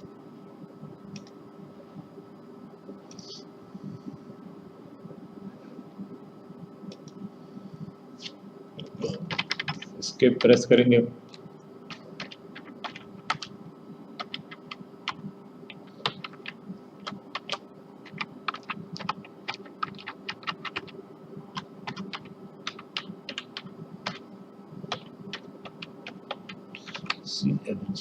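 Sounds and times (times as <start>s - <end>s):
faint steady hum: 0.0s - 28.0s
keyboard typing: 9.0s - 10.6s, 11.9s - 13.5s, 14.2s - 24.2s, 24.9s - 27.3s.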